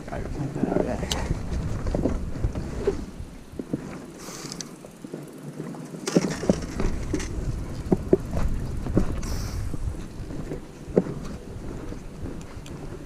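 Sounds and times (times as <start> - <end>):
wind rumbling on microphone: 0.0 - 13.0
bicycle clicks and rattles: 3.8 - 13.0.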